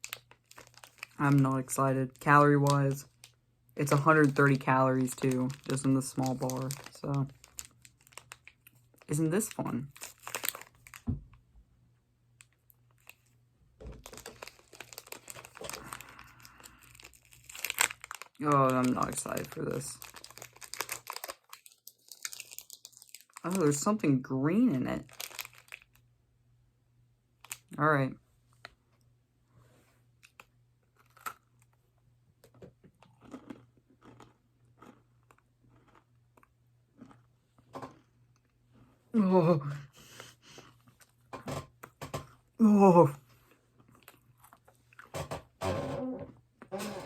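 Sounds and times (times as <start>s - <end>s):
crunchy chewing of nut bar: 0.0s - 1.2s, 5.0s - 9.1s, 9.9s - 11.0s, 14.0s - 23.4s, 25.0s - 26.0s, 30.2s - 31.8s, 32.4s - 38.6s, 43.3s - 45.1s
plastic wrapper crinkling: 0.0s - 11.2s, 12.4s - 23.9s, 25.0s - 26.0s, 27.4s - 27.7s.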